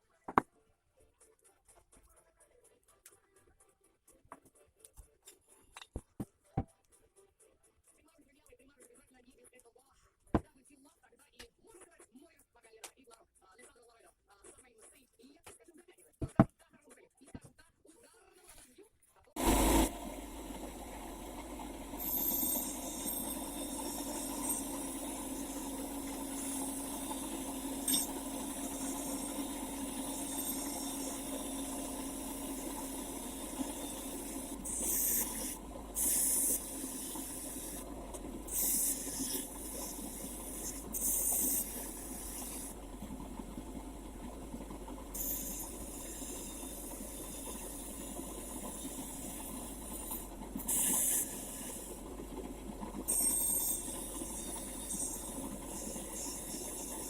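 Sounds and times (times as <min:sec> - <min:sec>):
steady machine hum: 0:19.4 - 0:57.0.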